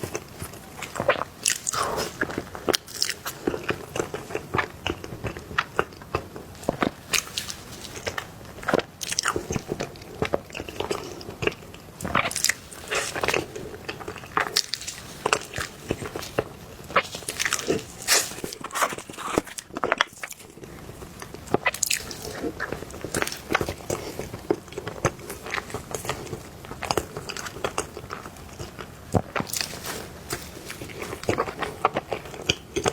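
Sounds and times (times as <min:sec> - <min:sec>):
chewing soft cake: 0:00.0 - 0:32.9.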